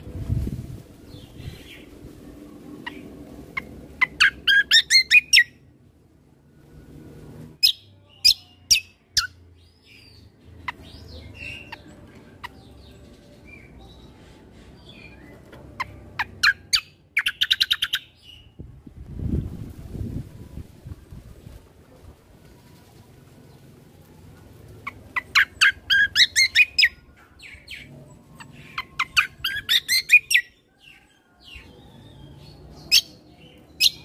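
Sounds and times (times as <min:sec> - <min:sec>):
low steady rumble: 0:00.0 - 0:07.6, 0:18.1 - 0:25.9
songbird rapid sharp chirps: 0:02.8 - 0:05.6, 0:07.6 - 0:18.5, 0:24.8 - 0:34.0.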